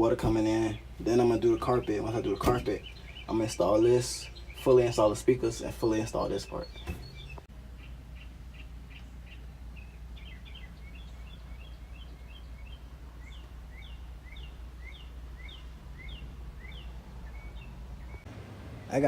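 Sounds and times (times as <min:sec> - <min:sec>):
low background hum: 0:00.0 - 0:19.0
small bird chirping: 0:00.2 - 0:19.0.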